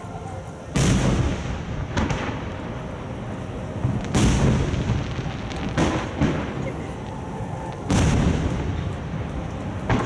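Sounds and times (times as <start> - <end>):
firework booms echoing: 0.7 - 2.7, 3.8 - 7.0, 7.7 - 10.0.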